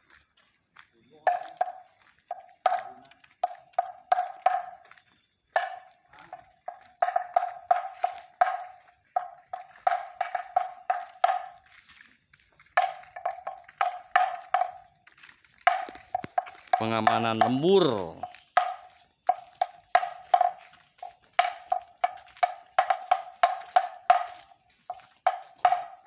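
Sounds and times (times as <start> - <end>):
hollow bamboo drum knocks: 3.8 - 4.8, 6.7 - 11.5, 12.8 - 14.8, 18.2 - 20.6, 25.2 - 26.0.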